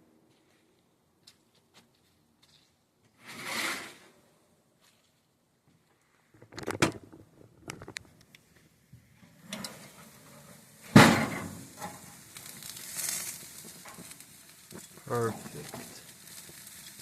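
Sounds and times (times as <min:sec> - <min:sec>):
faint hiss: 0:08.2 - 0:17.0.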